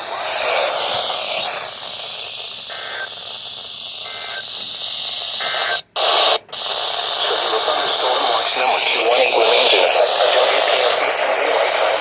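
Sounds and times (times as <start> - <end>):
radio static hiss: 0.0 - 12.0
digital data tone bursts: 0.2 - 5.9.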